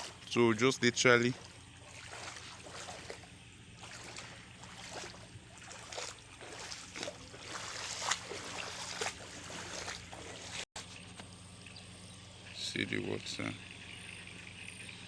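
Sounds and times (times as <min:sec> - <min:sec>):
rushing floodwater: 0:00.0 - 0:10.7
small water splashes: 0:00.0 - 0:10.7.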